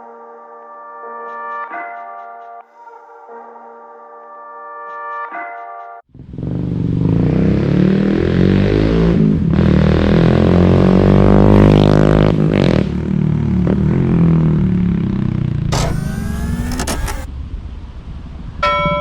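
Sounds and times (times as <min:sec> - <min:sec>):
motorcycle engine revving: 0:06.2 - 0:17.3.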